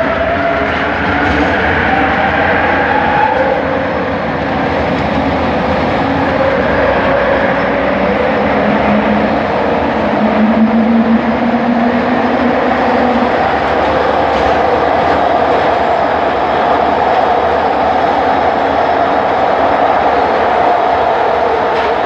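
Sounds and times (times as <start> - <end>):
train rolling rumble: 0.0 - 22.0.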